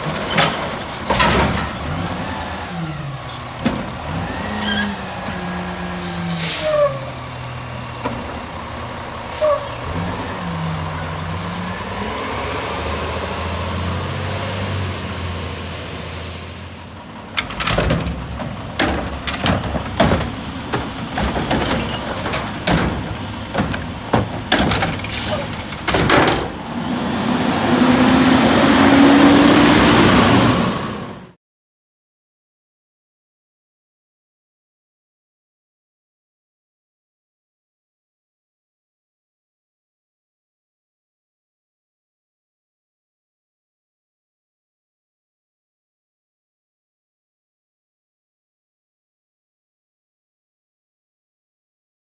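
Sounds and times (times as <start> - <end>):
garbage truck diesel engine: 0.0 - 31.4
air brake hiss: 6.0 - 7.0, 25.1 - 25.7
bangs and clanks: 17.3 - 26.9.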